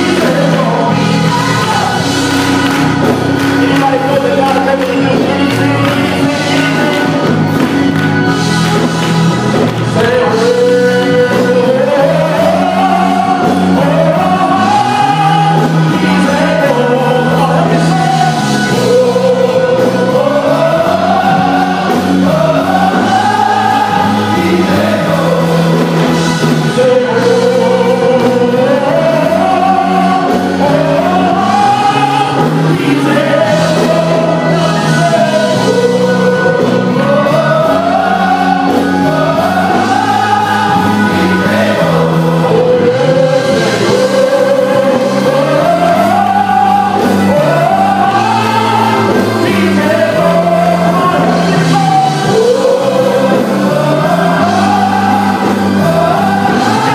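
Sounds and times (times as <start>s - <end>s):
gospel choir singing: 0.0s - 56.9s
instrumental accompaniment: 0.0s - 56.9s.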